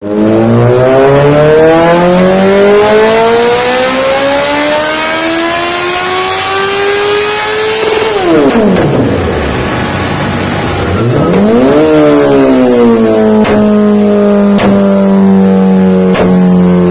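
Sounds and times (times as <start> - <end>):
motorcycle engine revving: 0.0 - 16.9
exhaust popping: 7.8 - 16.9.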